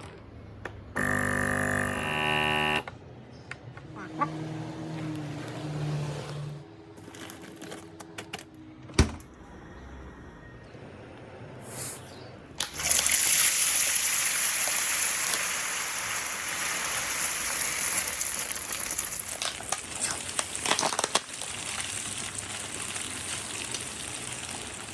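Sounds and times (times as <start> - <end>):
oil popping and crackling: 12.6 - 24.9
oil sizzling: 12.8 - 24.9.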